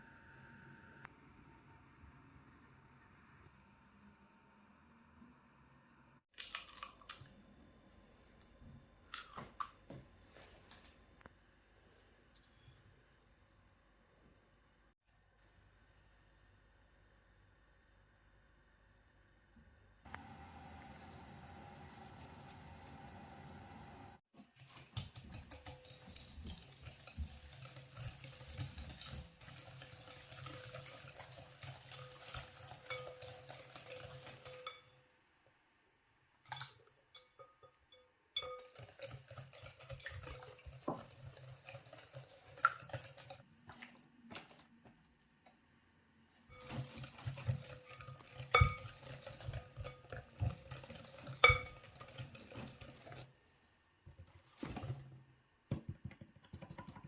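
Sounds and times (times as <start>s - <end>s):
utensils scraping a bowl: 24.4s - 34.9s, 46.5s - 53.3s.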